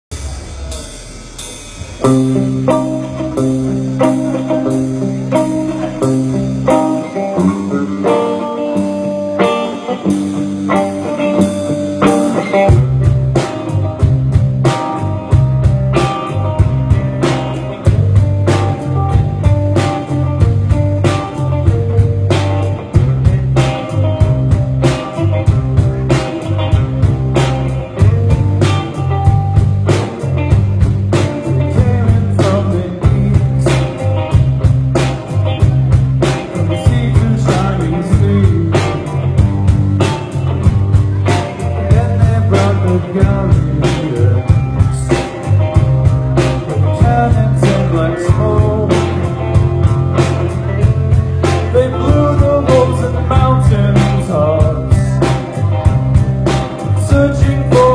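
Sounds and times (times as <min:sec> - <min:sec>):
drums keeping steady beat: 0:00.0 - 0:57.9
rock band playing live: 0:00.0 - 0:57.9.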